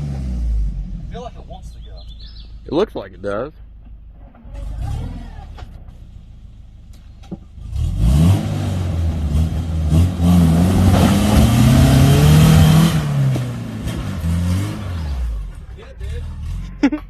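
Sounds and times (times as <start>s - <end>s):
engine revving hard: 7.6s - 15.4s.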